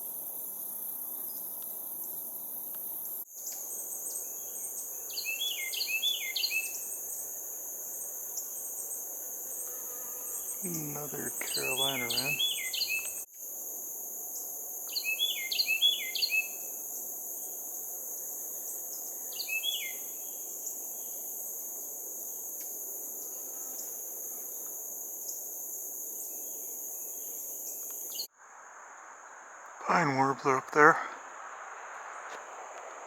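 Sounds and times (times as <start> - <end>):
insects droning: 0.0 - 33.0
wren singing: 4.1 - 6.8, 10.4 - 13.3, 14.9 - 16.6, 19.3 - 20.0.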